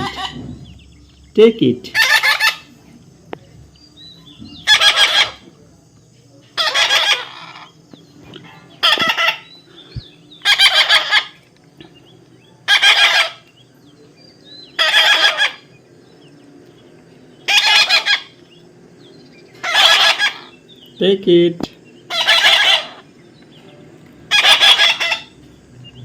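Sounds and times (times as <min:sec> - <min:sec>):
baby parrot begging calls: 0:00.0 - 0:00.4, 0:01.9 - 0:02.7, 0:04.6 - 0:05.4, 0:06.6 - 0:07.7, 0:08.8 - 0:09.5, 0:10.4 - 0:11.4, 0:12.6 - 0:13.5, 0:14.7 - 0:15.8, 0:17.4 - 0:18.4, 0:19.6 - 0:20.6, 0:22.1 - 0:23.1, 0:24.3 - 0:25.4.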